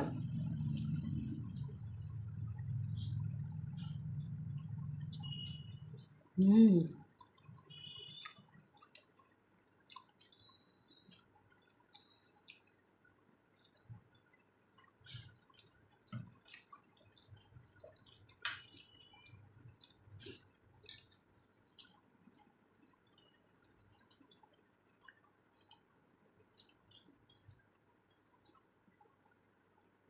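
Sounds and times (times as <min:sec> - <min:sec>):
soft wet chewing: 0:00.1 - 0:28.9.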